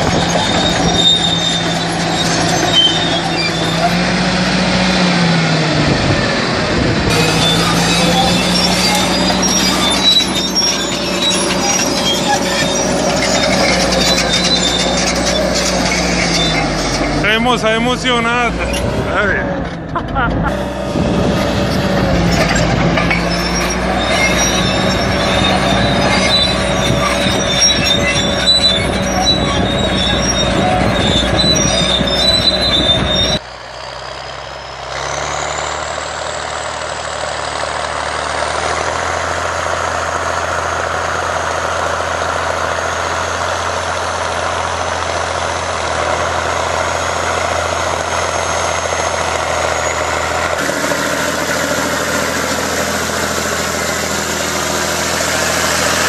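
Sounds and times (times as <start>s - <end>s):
high metallic squeal and clatter: 0.0s - 4.6s, 7.1s - 33.4s, 38.5s - 56.0s
bulldozer engine rumble: 0.0s - 56.0s
machine engine drone with whine: 5.2s - 33.4s.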